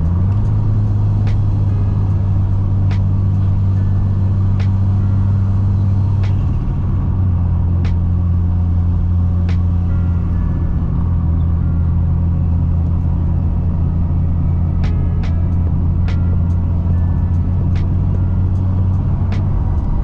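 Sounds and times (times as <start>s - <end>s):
car engine and road hum: 0.0s - 20.0s.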